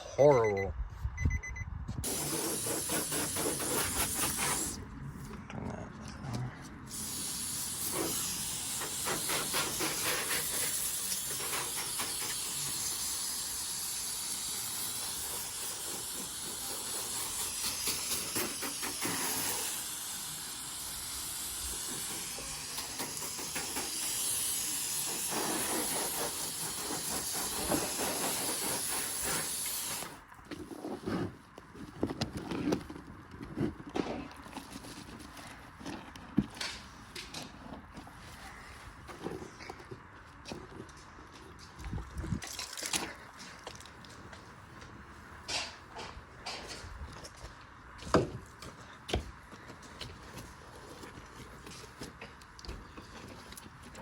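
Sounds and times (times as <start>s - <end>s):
hose spraying water on car: 2.0s - 4.8s, 6.9s - 30.2s.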